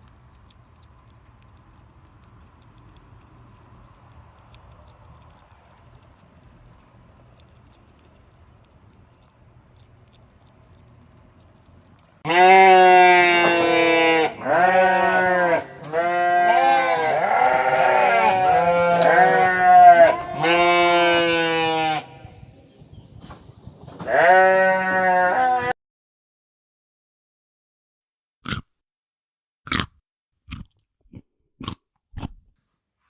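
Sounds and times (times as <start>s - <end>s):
sheep bleating: 12.3s - 22.2s, 24.0s - 25.7s.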